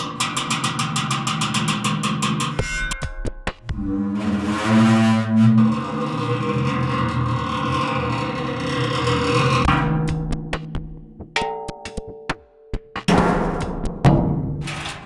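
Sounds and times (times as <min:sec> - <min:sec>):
noisy rasp: 0:03.7 - 0:09.9.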